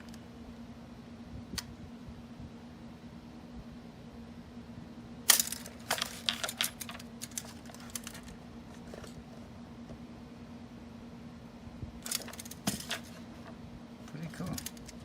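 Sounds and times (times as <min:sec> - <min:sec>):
small hard objects clicking and rattling: 0:05.3 - 0:08.4, 0:12.0 - 0:13.2, 0:14.1 - 0:15.0.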